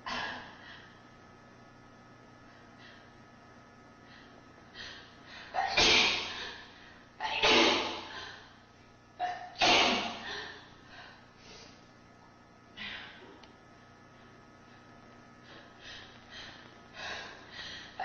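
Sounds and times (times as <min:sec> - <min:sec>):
person sneezing: 0:05.5 - 0:06.6, 0:07.2 - 0:08.4, 0:09.2 - 0:10.6.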